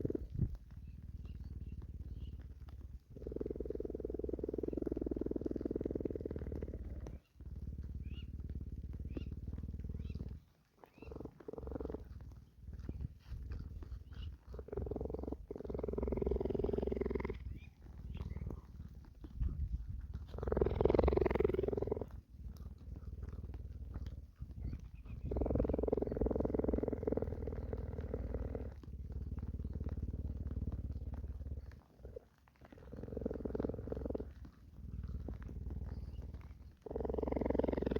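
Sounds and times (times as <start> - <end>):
cheetah purring: 0.0 - 37.9
rain pattering: 15.9 - 37.9.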